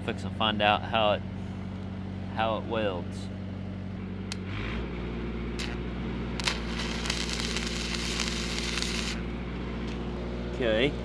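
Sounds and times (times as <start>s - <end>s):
welder engine running: 5.6s - 5.8s, 6.4s - 10.0s
welding arc crackling: 5.6s - 5.8s, 6.4s - 9.4s.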